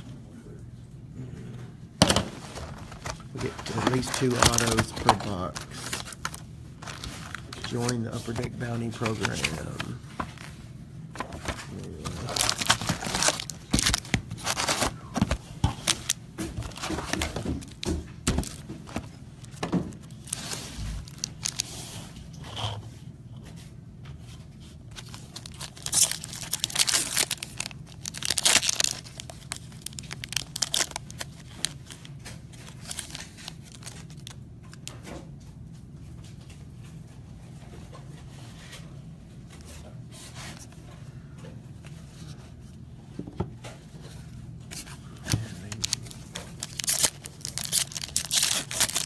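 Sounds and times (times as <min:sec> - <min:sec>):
cards being handled: 0:02.4 - 0:10.6, 0:11.2 - 0:21.8, 0:43.7 - 0:49.0
foil wrappers tearing and crinkling: 0:02.4 - 0:10.6, 0:11.2 - 0:22.0, 0:24.9 - 0:34.9, 0:44.7 - 0:49.0.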